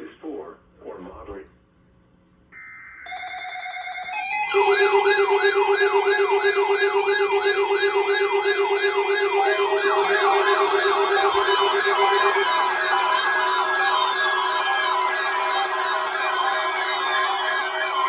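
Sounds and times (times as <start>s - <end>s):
alarm tones: 2.6s - 18.0s
rising alarm whine: 2.6s - 18.0s.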